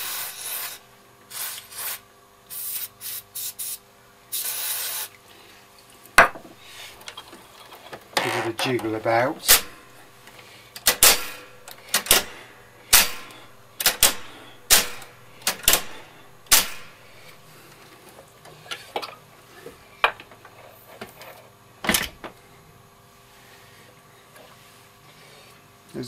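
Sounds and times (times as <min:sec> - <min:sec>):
sharp switch clicks: 0:12.9 - 0:15.9, 0:16.5 - 0:16.9.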